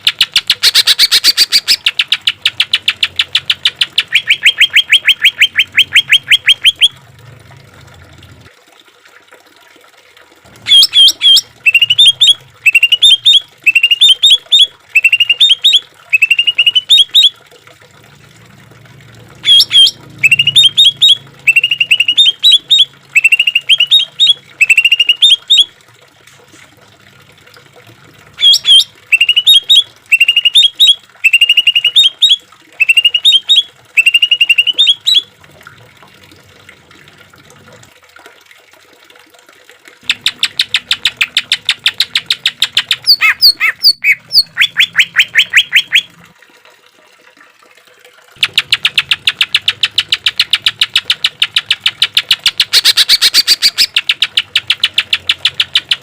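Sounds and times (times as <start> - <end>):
bird singing whistled notes: 10.7 - 17.3, 19.5 - 25.7, 28.4 - 35.3.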